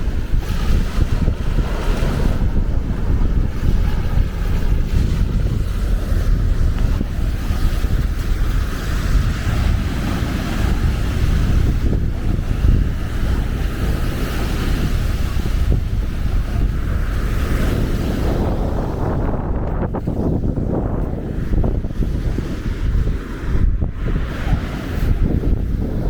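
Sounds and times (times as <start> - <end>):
small waves breaking on sand: 0.0 - 26.0
wind buffeting microphone: 0.0 - 26.0.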